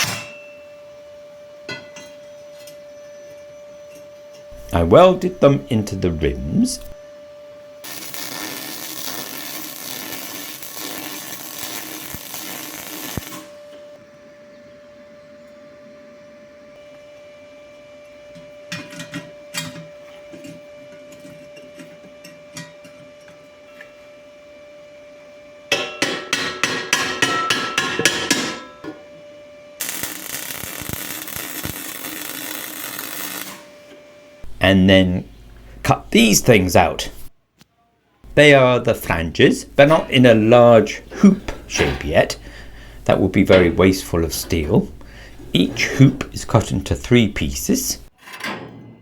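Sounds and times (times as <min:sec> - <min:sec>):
hammer striking steel: 0:00.0 - 0:00.6, 0:25.7 - 0:29.0
welding arc sizzling: 0:04.5 - 0:07.0, 0:07.8 - 0:13.7, 0:29.8 - 0:37.3, 0:38.3 - 0:48.1
loud steady hiss: 0:07.8 - 0:15.2, 0:29.8 - 0:33.7.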